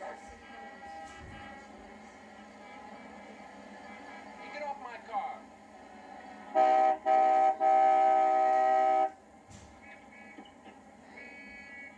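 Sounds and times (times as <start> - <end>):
car horn honking: 6.6 - 9.1.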